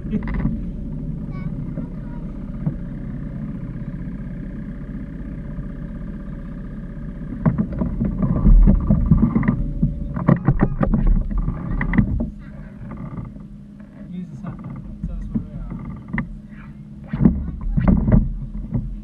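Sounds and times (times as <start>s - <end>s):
steady motor hum: 0.0s - 19.0s
uneven rumbling: 0.0s - 19.0s
sharp knocks and bumps: 7.3s - 13.5s, 14.4s - 19.0s.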